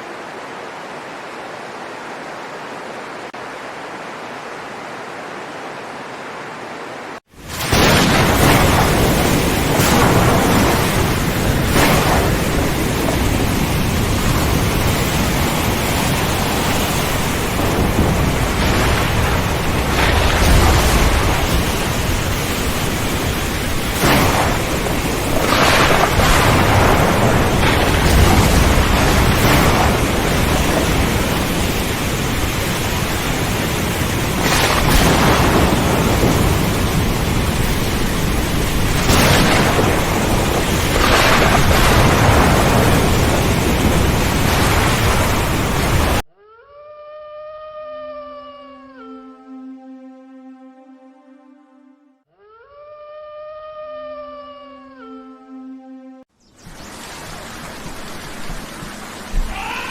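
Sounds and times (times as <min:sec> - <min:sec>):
heavy rain: 0:00.0 - 0:46.2, 0:56.6 - 0:59.9
thunder cracking and rumbling: 0:07.4 - 0:46.2.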